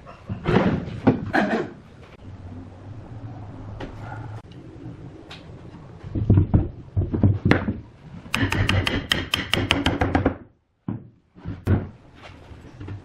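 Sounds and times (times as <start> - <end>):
hammering on wood: 7.1 - 11.0.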